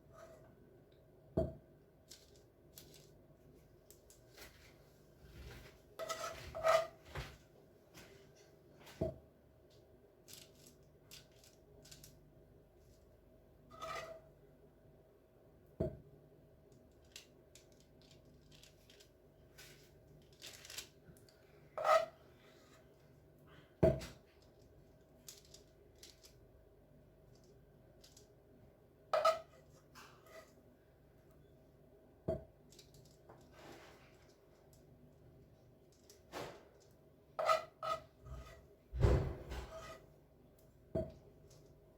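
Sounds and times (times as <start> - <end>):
faint clicks and scrapes: 2.0 - 7.4, 10.2 - 12.2, 16.7 - 23.2, 24.3 - 26.4, 27.2 - 28.4, 29.2 - 30.7, 32.7 - 34.9, 39.4 - 40.7.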